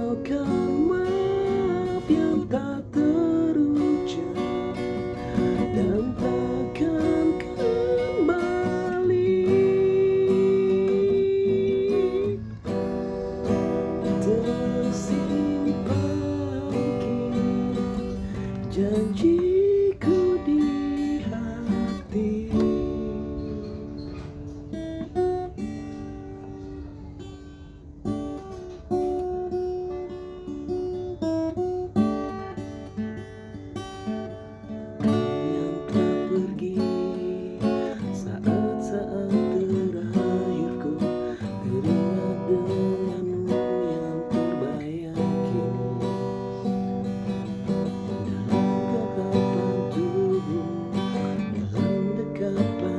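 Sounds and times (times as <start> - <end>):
acoustic guitar ballad: 0.0 - 52.9.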